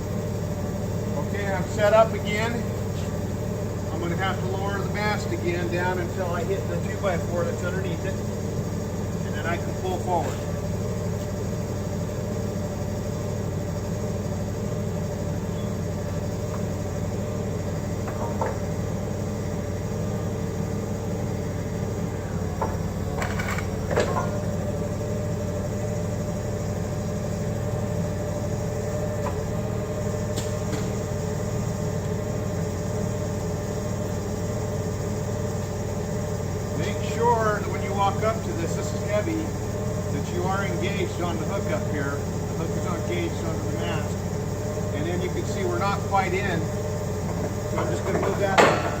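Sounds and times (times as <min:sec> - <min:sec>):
forklift engine running: 0:00.0 - 0:49.0
metal clunks and knocks: 0:18.0 - 0:18.7, 0:22.6 - 0:24.5, 0:47.2 - 0:49.0.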